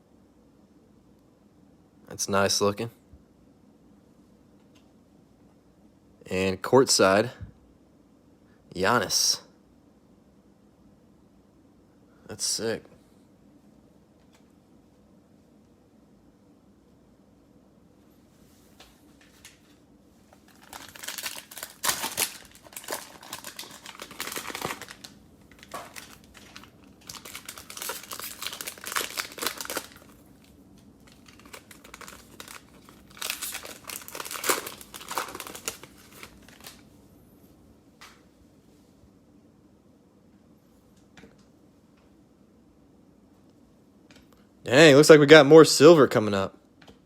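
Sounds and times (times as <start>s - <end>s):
plastic wrapper crinkling and tearing: 20.4s - 36.8s.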